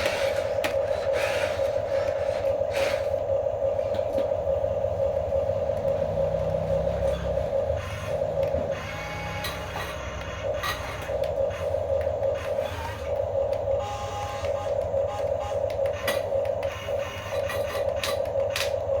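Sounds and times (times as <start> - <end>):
toy electric motors whining: 0.0 - 3.2, 7.0 - 19.0.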